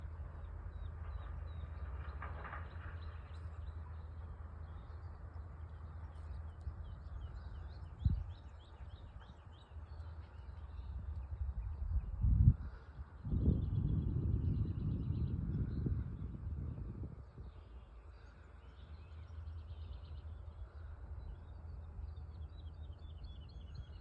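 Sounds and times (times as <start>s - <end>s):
small birds chirping: 0.0s - 16.0s
steady low rumble: 0.0s - 24.0s.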